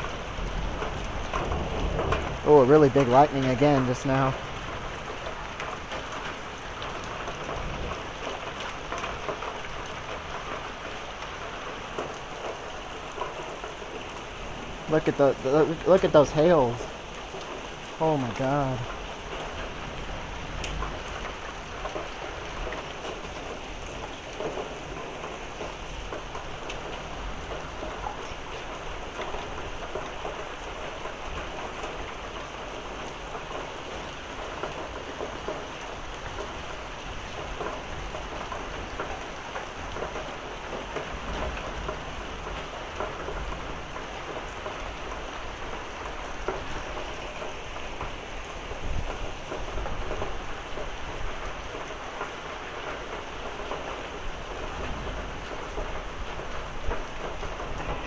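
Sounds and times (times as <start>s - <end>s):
hailstones ticking: 0.0s - 58.0s
heavy rain pouring: 0.0s - 58.0s
low rumbles of thunder: 0.3s - 2.5s, 54.5s - 58.0s.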